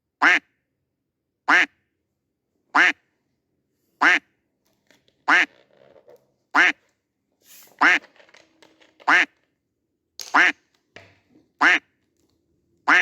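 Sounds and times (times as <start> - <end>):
duck quacking: 0.2 - 0.5, 1.5 - 1.7, 2.8 - 3.0, 4.0 - 4.2, 5.3 - 5.5, 6.6 - 6.8, 9.1 - 9.3, 10.4 - 10.6, 11.6 - 11.9.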